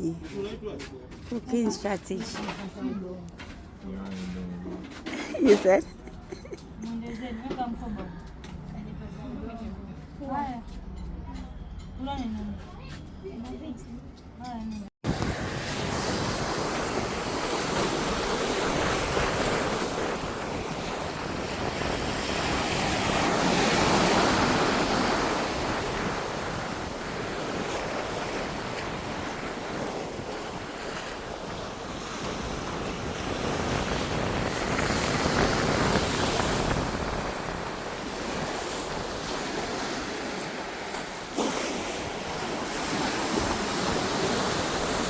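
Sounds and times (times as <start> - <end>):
wind buffeting microphone: 15.0 - 41.4
ocean surf washing in: 15.0 - 45.0.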